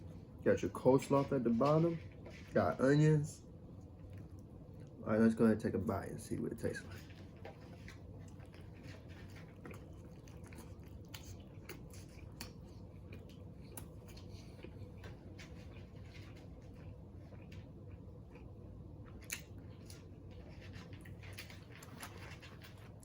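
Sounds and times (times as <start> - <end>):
low steady hum: 0.0 - 23.0
person chewing crunchy food: 6.7 - 23.0.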